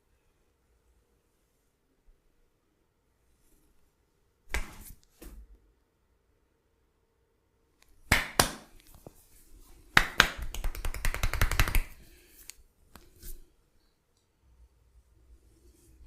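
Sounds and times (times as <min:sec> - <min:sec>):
hand slaps on body: 0:04.5 - 0:05.4, 0:08.1 - 0:09.0, 0:10.0 - 0:12.0.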